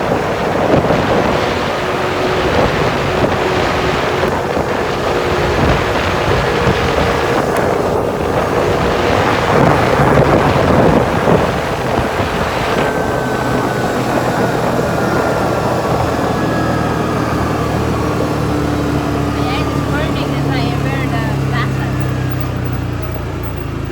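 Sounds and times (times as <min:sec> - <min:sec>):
four-wheeler engine running: 0:00.0 - 0:23.9
wind rushing over microphone: 0:00.0 - 0:23.9.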